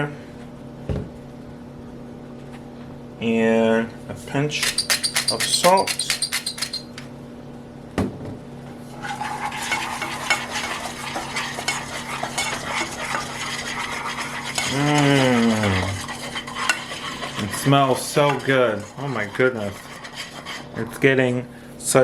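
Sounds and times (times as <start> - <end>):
spoon scraping a saucepan: 4.6 - 7.0, 9.0 - 21.1.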